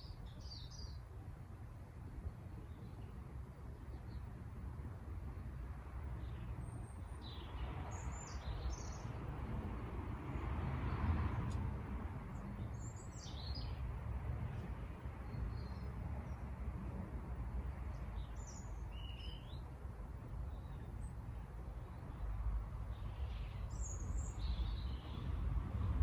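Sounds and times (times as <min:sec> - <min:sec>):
outdoor background noise: 0:00.0 - 0:26.0.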